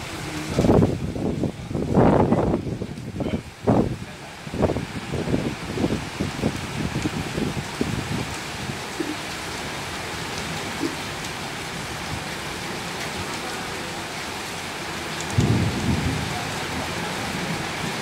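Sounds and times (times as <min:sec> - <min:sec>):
heavy rain: 0:00.0 - 0:18.0
low rumble: 0:15.4 - 0:16.5.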